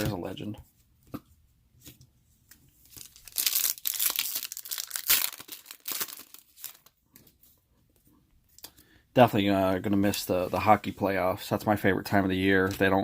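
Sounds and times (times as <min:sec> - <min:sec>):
wrapper tearing and crinkling: 0:02.8 - 0:07.0.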